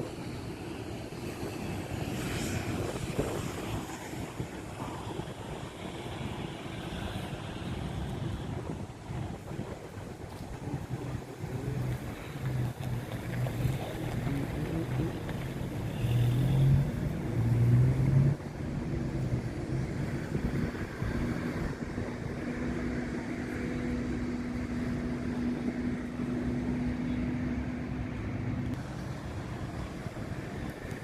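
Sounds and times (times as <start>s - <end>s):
engine humming: 7.2s - 31.0s.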